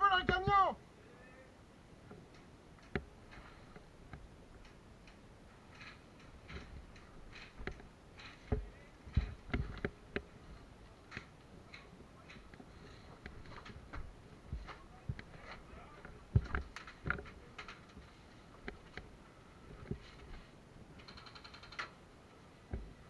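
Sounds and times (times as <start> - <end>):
sharp clicks and knocks: 2.1 - 19.1.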